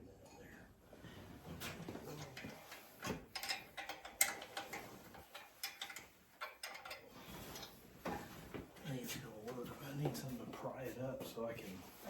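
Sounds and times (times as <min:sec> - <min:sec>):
metallic clicks and clanks of tools: 0:01.8 - 0:07.8.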